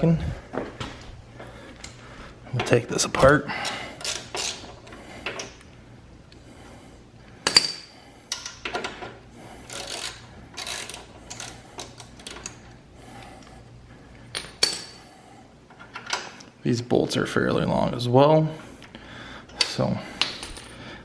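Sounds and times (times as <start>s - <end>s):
tools clicking and scraping: 3.6s - 5.7s, 7.4s - 13.5s, 14.3s - 15.0s.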